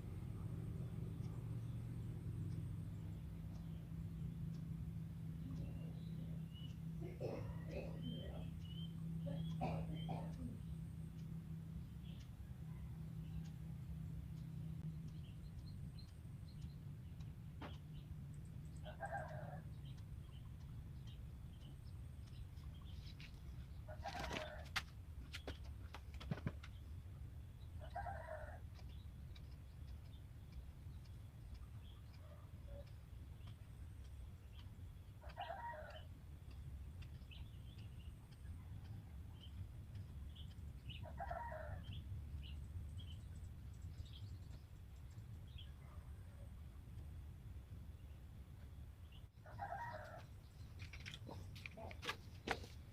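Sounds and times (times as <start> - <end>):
low steady hum: 0.0 - 52.9
small birds chirping: 0.1 - 52.9
rooster crowing: 27.8 - 28.6, 41.1 - 41.8, 49.5 - 50.2
sharp clicks: 28.6 - 45.7.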